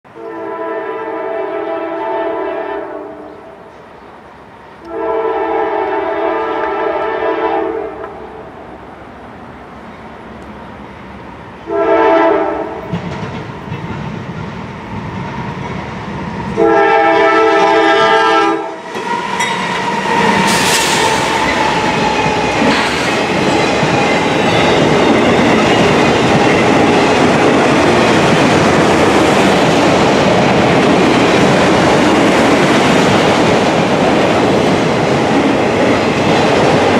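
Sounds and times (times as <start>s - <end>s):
locomotive air horn blasts: 0.1s - 3.5s, 4.9s - 8.1s, 11.6s - 12.8s, 16.6s - 18.8s
diesel locomotive engine: 0.1s - 36.9s
train wheels clattering: 12.6s - 16.7s, 18.8s - 36.9s.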